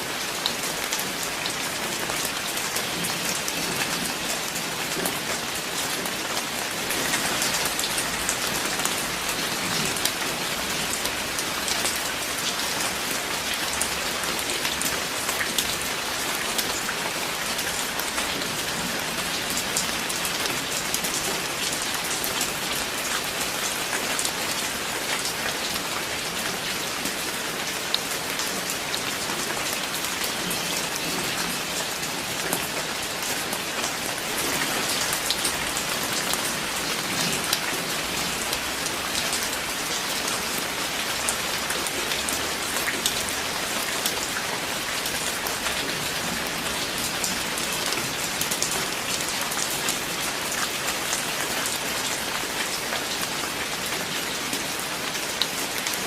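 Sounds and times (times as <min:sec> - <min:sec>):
steady rain: 0:00.0 - 0:56.0.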